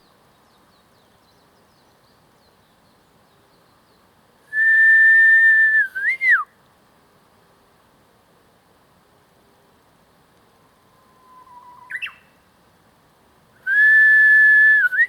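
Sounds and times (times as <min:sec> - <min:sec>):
person whistling birdsong imitation: 0:04.5 - 0:06.5, 0:11.2 - 0:12.2, 0:13.7 - 0:15.0.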